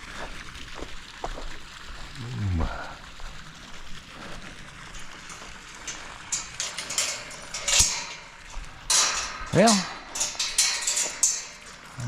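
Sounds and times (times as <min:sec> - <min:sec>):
footsteps crunching outdoors: 0:00.0 - 0:07.5.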